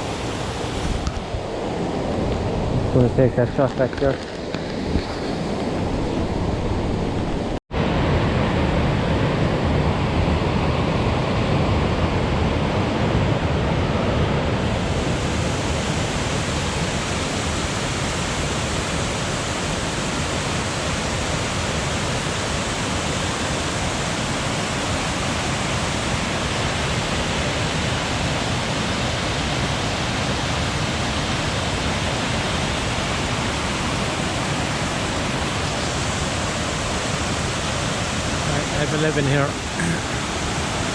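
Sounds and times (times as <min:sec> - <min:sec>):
waterfall rushing water: 0:00.0 - 0:04.1, 0:14.6 - 0:40.9.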